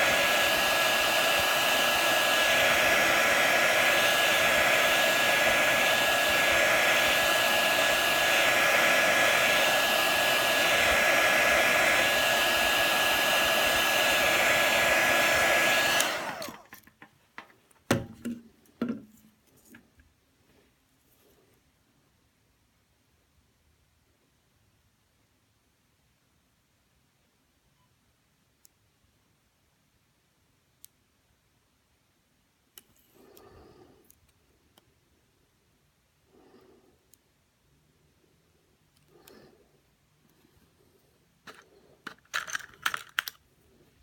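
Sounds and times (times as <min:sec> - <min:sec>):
heat gun blowing with whine: 0:00.0 - 0:16.9.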